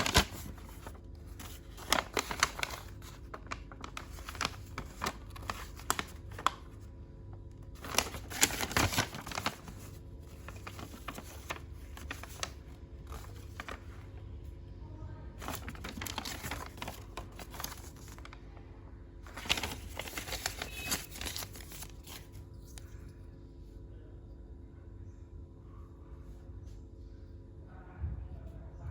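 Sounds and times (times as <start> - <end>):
plastic toy packaging rustling: 0.0 - 6.9, 7.6 - 14.2, 15.4 - 18.6, 19.2 - 23.0
faint steady hum: 0.0 - 28.9.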